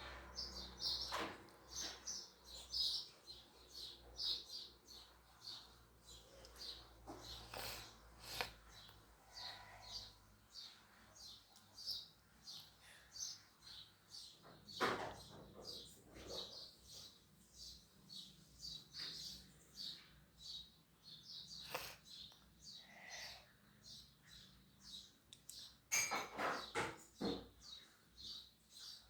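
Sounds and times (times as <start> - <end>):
small bird chirping: 0.0 - 29.0.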